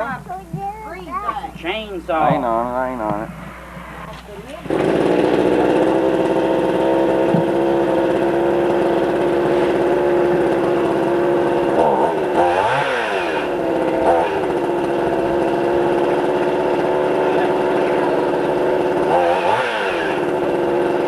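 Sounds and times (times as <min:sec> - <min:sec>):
chainsaw running at high revs: 0:04.6 - 0:21.0.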